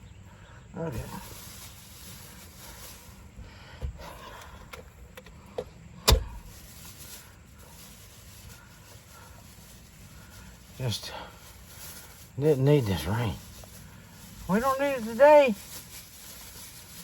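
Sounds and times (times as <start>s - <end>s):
loud thump: 6.0s - 6.4s.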